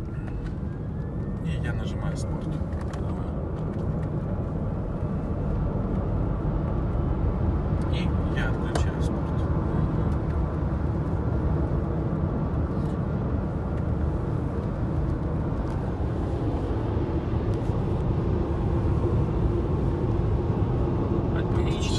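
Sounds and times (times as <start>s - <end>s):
road and tyre rumble: 0.0s - 21.9s.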